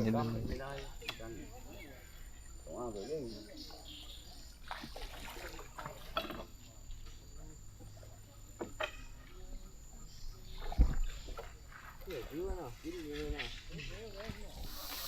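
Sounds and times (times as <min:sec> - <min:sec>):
water splashing and trickling: 0:04.5 - 0:06.6.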